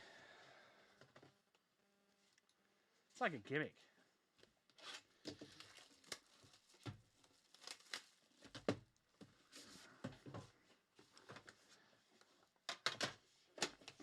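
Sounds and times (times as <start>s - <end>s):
packaging crinkling and rustling: 4.8s - 8.7s.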